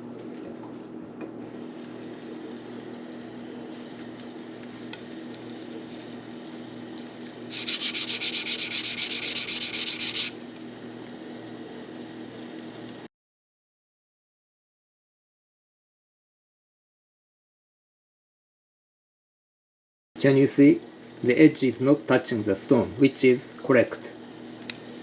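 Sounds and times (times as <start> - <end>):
steady low hum: 0.0 - 13.1
blade scraping on whetstone: 7.5 - 10.4.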